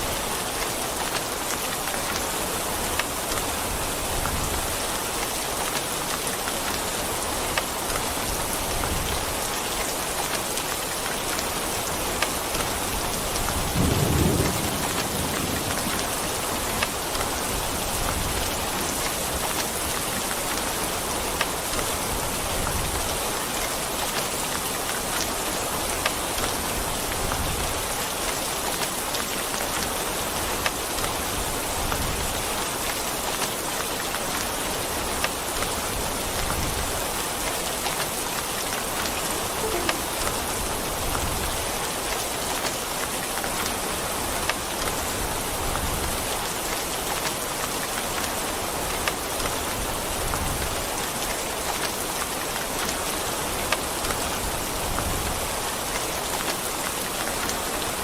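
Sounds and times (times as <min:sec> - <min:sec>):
heavy rain hissing: 0:00.0 - 0:58.0
thunder rumbling: 0:13.6 - 0:18.2
rain drop ticks: 0:37.4 - 0:41.3.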